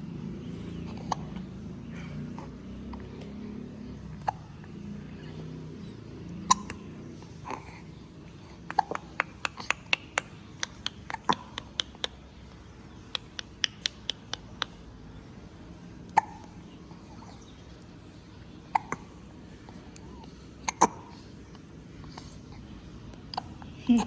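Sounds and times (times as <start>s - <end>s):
baby hiccuping: 4.2s - 4.5s, 6.4s - 6.8s, 16.1s - 16.6s, 18.7s - 19.2s, 20.6s - 21.2s.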